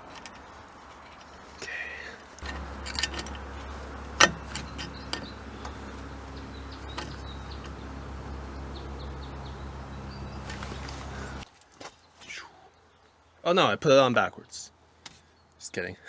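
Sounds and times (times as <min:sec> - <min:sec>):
steady low hum: 0:02.4 - 0:11.4.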